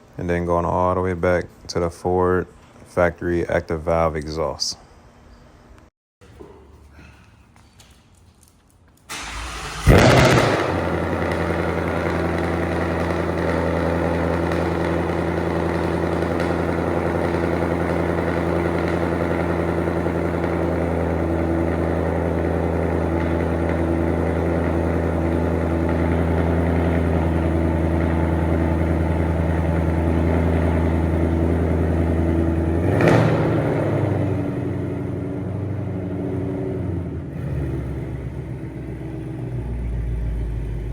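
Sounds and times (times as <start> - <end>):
car engine idling loudly: 9.1 - 40.9
engine revving blip: 9.7 - 15.2.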